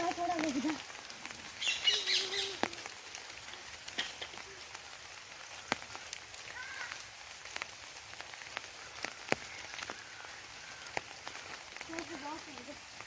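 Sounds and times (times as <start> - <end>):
sharp clicks and crackles: 0.0 - 13.0.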